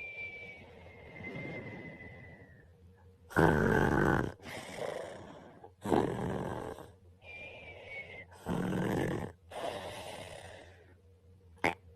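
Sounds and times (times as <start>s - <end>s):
soft whistling breaths: 0.0s - 3.2s, 7.2s - 8.6s
man snoring: 3.3s - 6.9s, 8.4s - 10.7s.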